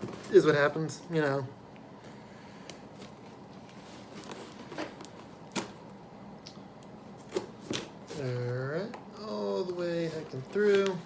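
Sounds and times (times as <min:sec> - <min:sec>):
cardboard box rustling: 0:02.9 - 0:05.4.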